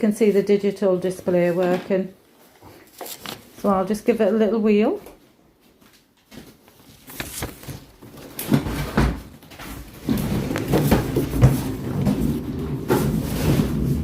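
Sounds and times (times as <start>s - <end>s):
wheels rolling rumble: 10.0s - 14.0s.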